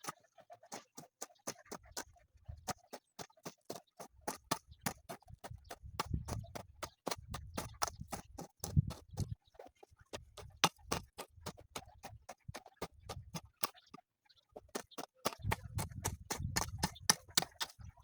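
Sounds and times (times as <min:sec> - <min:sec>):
rapid clicking and knocking: 0:14.6 - 0:18.0
dull low thuds: 0:15.4 - 0:17.4.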